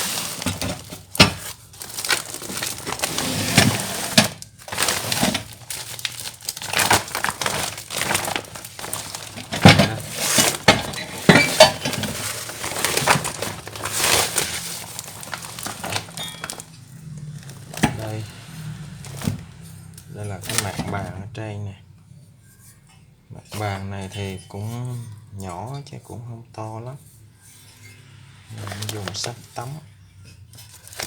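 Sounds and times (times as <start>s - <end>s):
plastic wrap crinkling and tearing: 0.0s - 19.5s, 28.5s - 29.4s, 30.6s - 31.0s
steel parts clinking: 15.3s - 16.9s.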